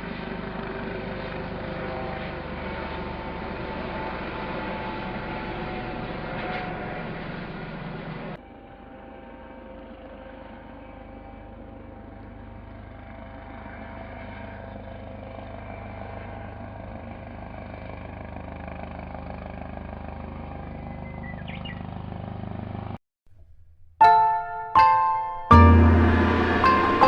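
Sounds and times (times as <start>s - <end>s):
vehicle running: 25.5s - 27.0s.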